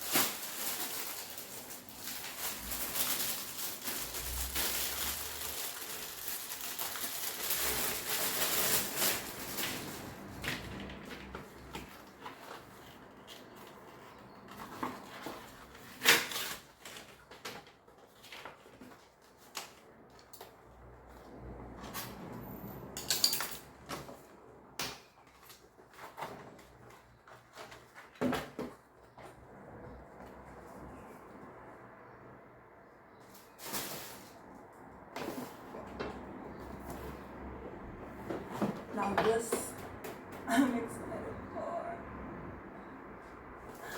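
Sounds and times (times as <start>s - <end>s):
rustling: 0.0s - 21.2s, 33.2s - 40.8s.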